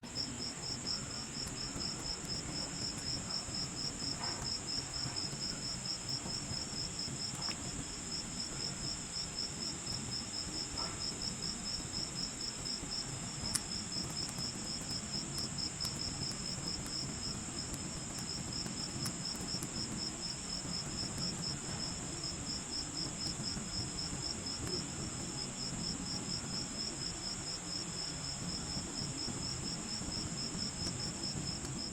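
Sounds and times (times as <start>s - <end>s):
continuous high insect trill: 0.0s - 31.9s
insects chirping: 0.0s - 31.9s.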